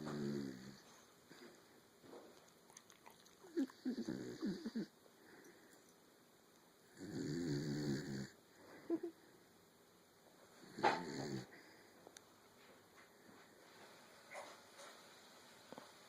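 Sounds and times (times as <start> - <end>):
person snoring: 0.0 - 0.8, 3.6 - 4.9, 7.0 - 8.4, 10.7 - 11.5.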